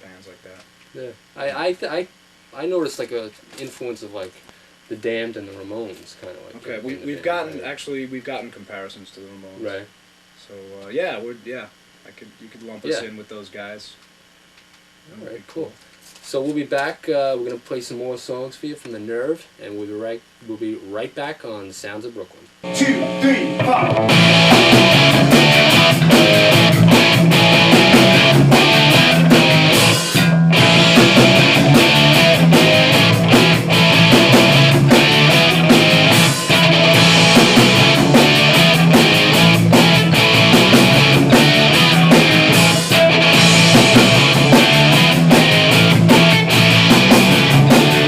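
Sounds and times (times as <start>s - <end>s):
distorted electric guitar: 22.6s - 48.0s
drum kit fast beat: 22.6s - 48.0s.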